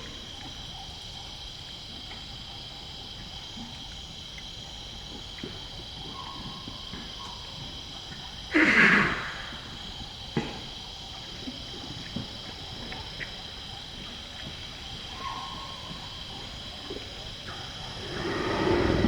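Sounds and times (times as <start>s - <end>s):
rhinoceros snorting: 14.6s - 19.0s.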